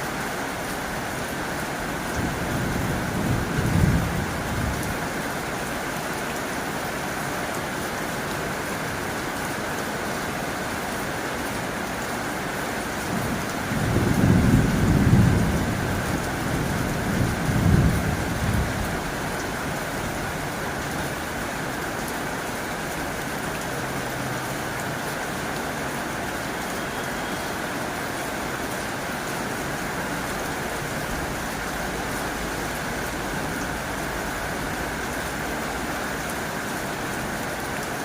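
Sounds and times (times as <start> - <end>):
heavy rain on a tin roof: 0.0 - 38.0
thunder rumbling: 2.2 - 4.9, 13.2 - 19.2.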